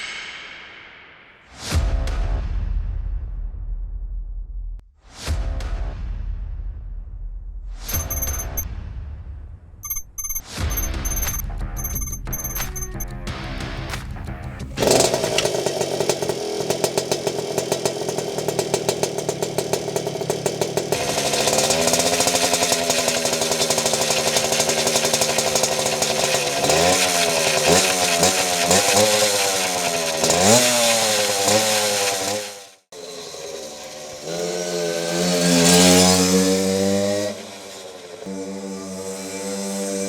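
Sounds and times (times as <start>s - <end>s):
moped engine revving: 7.9s - 8.6s, 9.8s - 13.1s, 14.7s - 40.0s
moped riding past: 14.8s - 40.0s.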